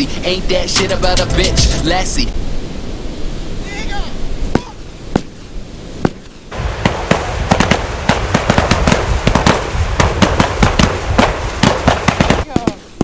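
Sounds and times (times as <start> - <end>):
low rumble: 6.5 - 12.4
firecrackers banging: 6.5 - 13.0.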